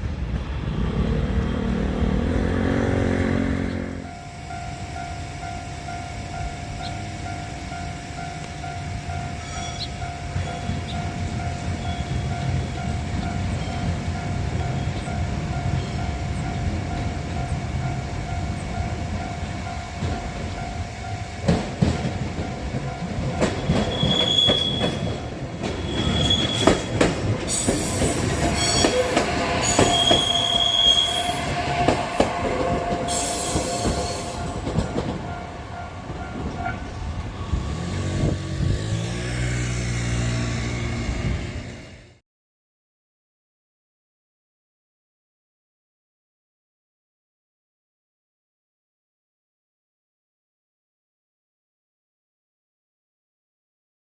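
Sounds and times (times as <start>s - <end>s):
train rumbling: 0.0s - 42.2s
crossing warning bell: 3.2s - 41.9s
train wheels squealing: 8.6s - 13.9s, 23.4s - 35.4s
wheels clicking over rail joints: 21.4s - 30.4s.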